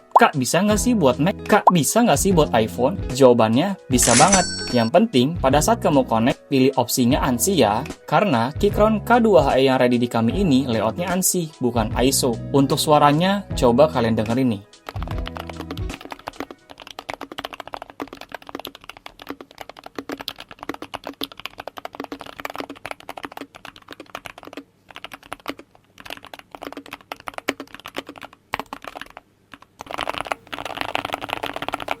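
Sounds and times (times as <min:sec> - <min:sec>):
keyboard keystroke clacks: 0:14.9 - 0:32.0.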